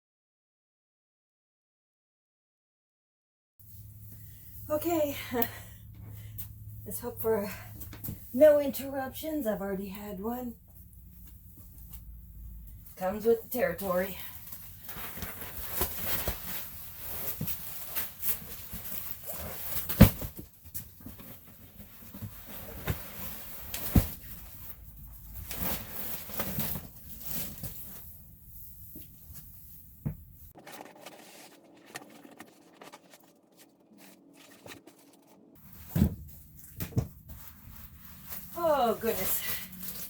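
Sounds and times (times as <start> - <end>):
flooring materials being handled: 14.6 - 40.0.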